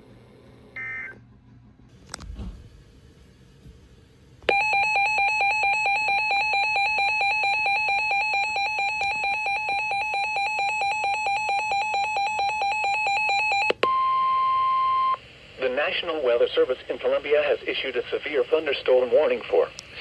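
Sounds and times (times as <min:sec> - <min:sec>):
shrill pulsing alarm beep: 0:04.5 - 0:15.2.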